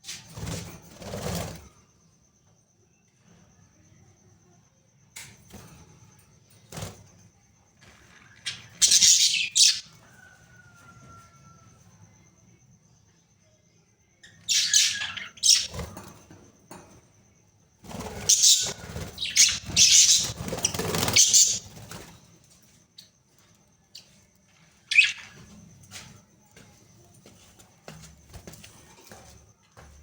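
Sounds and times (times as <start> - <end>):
budgerigars squawking: 8.8 - 9.8.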